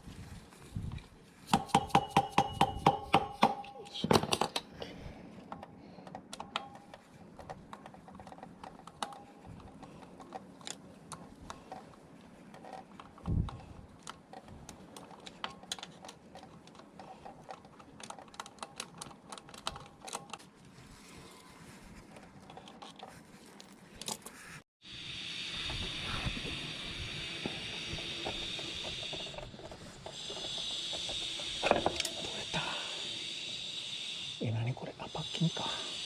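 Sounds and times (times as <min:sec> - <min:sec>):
tools clicking and tapping: 0:01.5 - 0:04.8, 0:05.5 - 0:11.9, 0:12.5 - 0:20.4, 0:27.4 - 0:32.3
steady hiss: 0:24.9 - 0:36.0.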